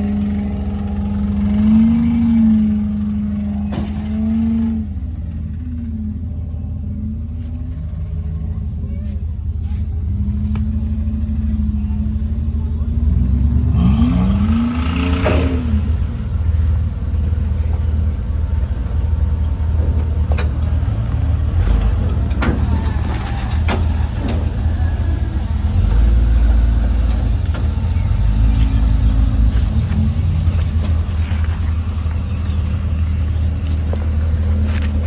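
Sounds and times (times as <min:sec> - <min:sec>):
truck engine running: 0:00.0 - 0:35.0
sharp clunks: 0:17.2 - 0:32.1.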